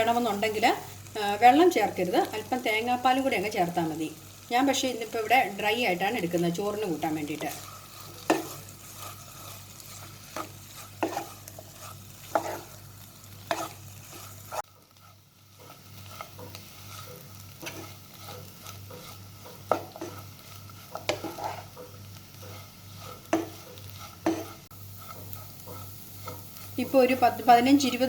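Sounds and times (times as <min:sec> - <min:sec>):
low sizzle: 0:00.0 - 0:28.0
spoon scraping a pan: 0:07.4 - 0:28.0.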